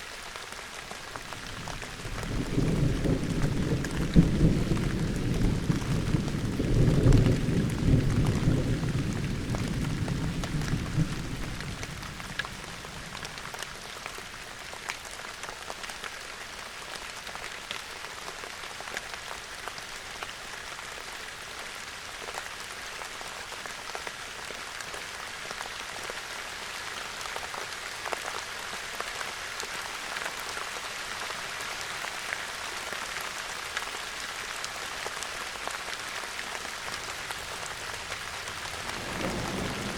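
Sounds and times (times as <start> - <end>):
steady rain: 0.0 - 39.9
raindrops ticking nearby: 0.2 - 39.9
low thunder rumble: 1.8 - 12.6, 37.5 - 39.9.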